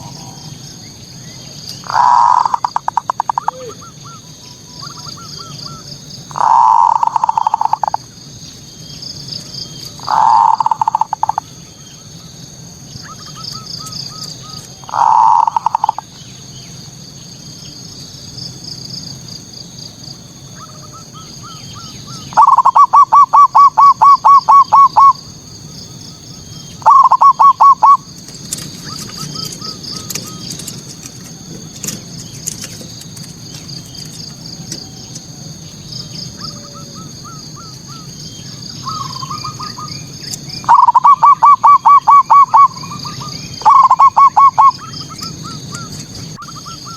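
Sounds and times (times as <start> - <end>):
dove cooing: 0.0 - 0.8, 1.8 - 8.0, 10.0 - 11.5, 13.0 - 16.2, 20.5 - 25.3, 26.2 - 46.9
high chirping: 0.0 - 9.1, 9.7 - 12.3, 12.9 - 16.9, 20.5 - 31.2, 34.9 - 46.9.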